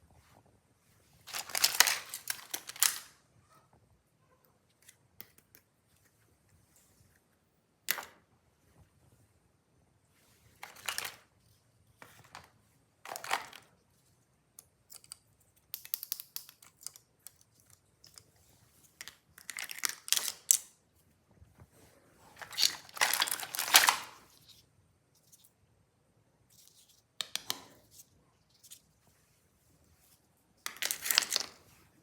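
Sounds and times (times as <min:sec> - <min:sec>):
plastic toy parts clicking and rattling: 0:01.3 - 0:03.2, 0:13.1 - 0:13.7, 0:14.6 - 0:18.3, 0:19.0 - 0:20.8, 0:22.4 - 0:24.6, 0:30.7 - 0:31.6.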